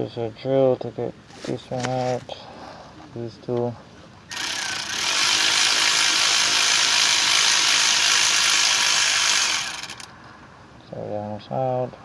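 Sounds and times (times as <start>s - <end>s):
power drill running: 4.3s - 10.1s.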